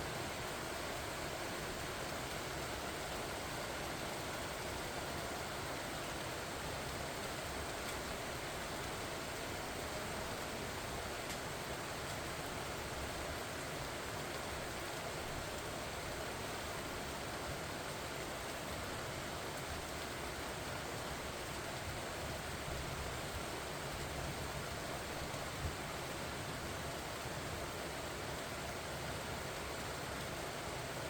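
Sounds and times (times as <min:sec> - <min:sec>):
rain falling on leaves: 0:00.0 - 0:31.0.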